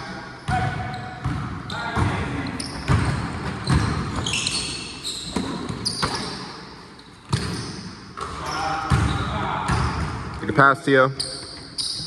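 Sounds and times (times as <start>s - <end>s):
sneaker squeaks: 0.0s - 10.2s, 11.1s - 12.0s
basketball bouncing on court: 0.4s - 6.3s, 8.9s - 10.3s.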